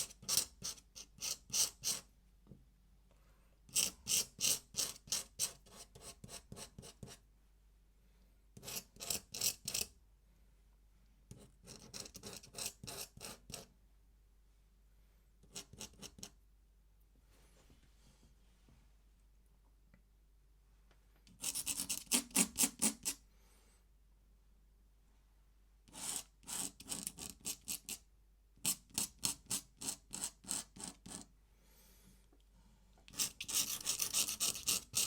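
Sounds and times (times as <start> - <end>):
pen scratching on paper: 0.0 - 2.1, 3.7 - 7.2, 8.6 - 9.9, 11.3 - 13.7, 15.4 - 16.4, 21.4 - 23.2, 25.9 - 28.0, 28.6 - 31.3, 33.1 - 35.0.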